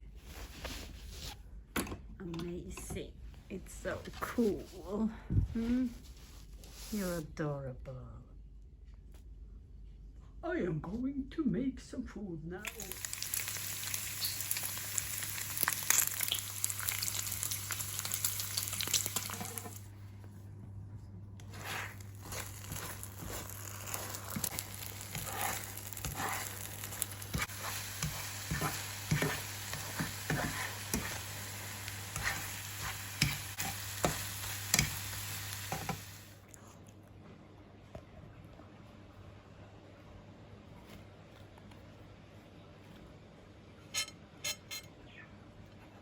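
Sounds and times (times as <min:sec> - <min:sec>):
egg and bacon sizzling: 0:12.7 - 0:19.9, 0:21.6 - 0:36.4.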